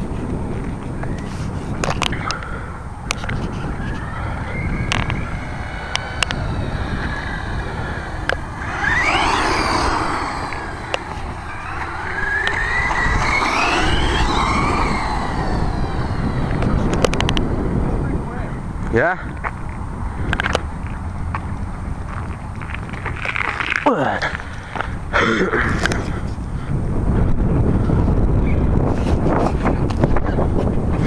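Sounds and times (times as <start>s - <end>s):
rc truck motors whining: 1.0s - 17.9s
low rumble: 2.9s - 18.9s.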